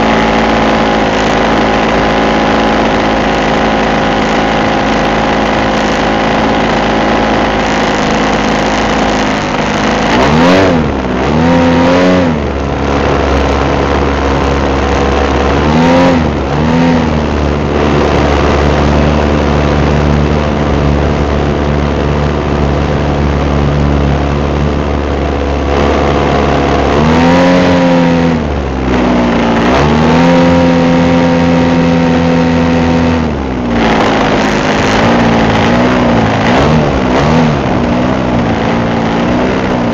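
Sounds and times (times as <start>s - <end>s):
model plane engine: 0.0s - 39.9s
rushing wind: 0.0s - 39.9s.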